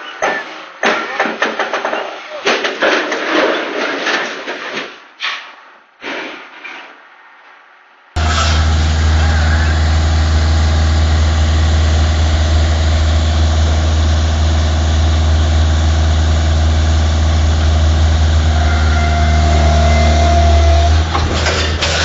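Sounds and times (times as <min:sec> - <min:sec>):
heavy engine idling: 0:08.2 - 0:22.0.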